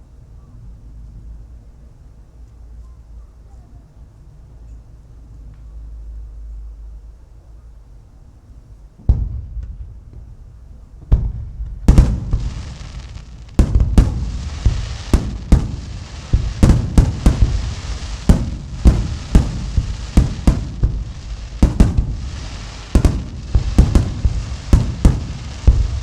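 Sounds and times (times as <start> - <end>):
fireworks bangs: 9.0 - 26.0
fireworks crackle: 9.1 - 26.0.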